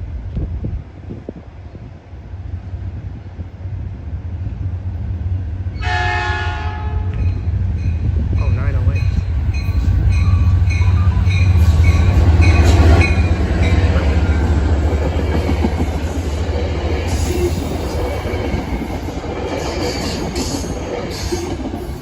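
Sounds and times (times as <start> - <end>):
diesel locomotive rumble: 0.0 - 22.0
train cars rolling on rails: 0.1 - 22.0.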